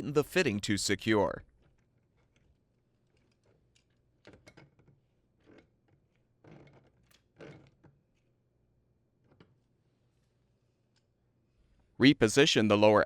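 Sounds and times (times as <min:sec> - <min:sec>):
faint clicks and scrapes of fitting: 0:01.5 - 0:08.4.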